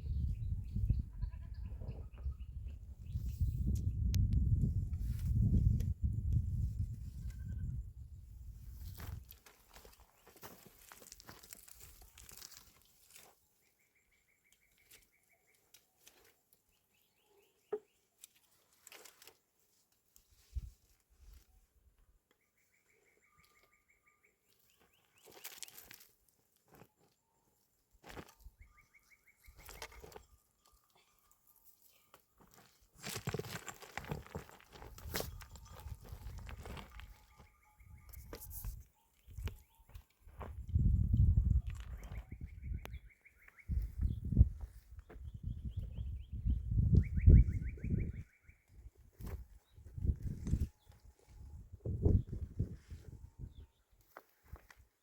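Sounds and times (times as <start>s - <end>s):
footsteps on stony ground: 8.6s - 13.4s, 24.6s - 27.2s, 28.0s - 28.6s, 31.8s - 46.8s, 48.0s - 55.0s.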